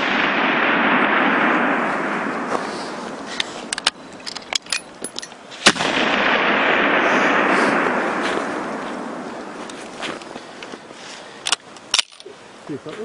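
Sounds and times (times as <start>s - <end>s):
rifle shot with rolling echo: 0.0s - 4.0s, 5.4s - 10.6s.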